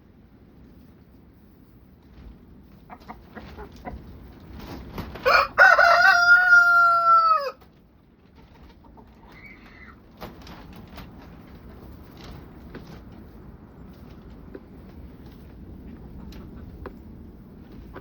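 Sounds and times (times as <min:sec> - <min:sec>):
chickens clucking: 0:02.5 - 0:18.0
rooster crowing: 0:05.2 - 0:07.6.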